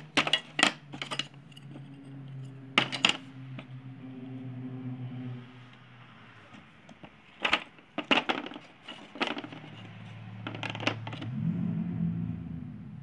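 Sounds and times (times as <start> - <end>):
plastic toy tools clattering: 0.0 - 3.7, 6.5 - 11.3.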